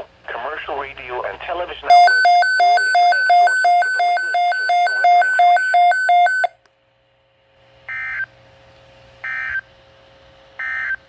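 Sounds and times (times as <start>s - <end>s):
alternating two-pitch beeping: 1.9s - 6.5s.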